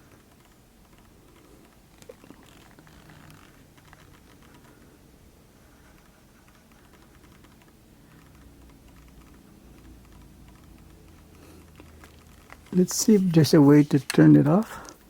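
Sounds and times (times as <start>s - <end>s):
keyboard keys clicking: 5.9s - 13.2s.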